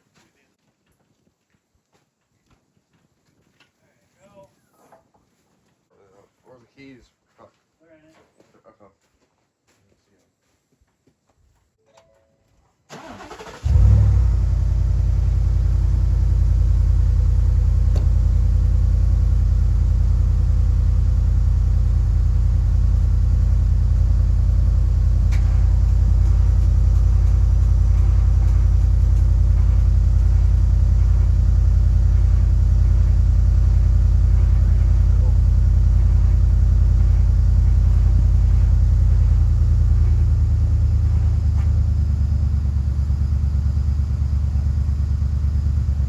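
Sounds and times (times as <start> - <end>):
truck engine cranking and idling: 12.9 - 46.0.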